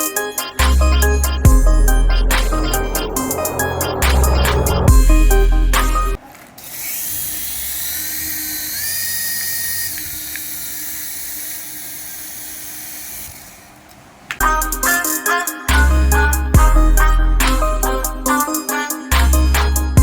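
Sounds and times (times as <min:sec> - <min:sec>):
background music: 0:00.0 - 0:06.2, 0:14.4 - 0:20.0
toy electric motor whining: 0:06.4 - 0:13.8.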